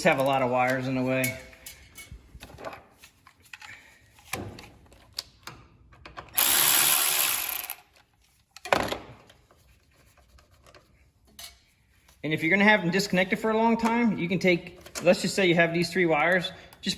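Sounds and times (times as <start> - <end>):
power tool running: 6.4 - 7.8.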